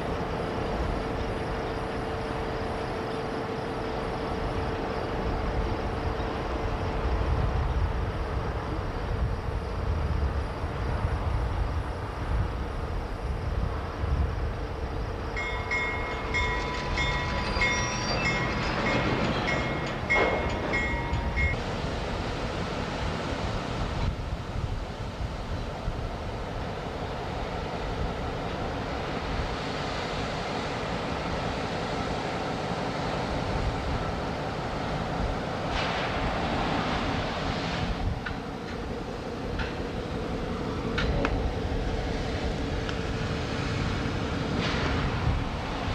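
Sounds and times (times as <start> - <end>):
rail cars rolling: 0.0 - 45.9.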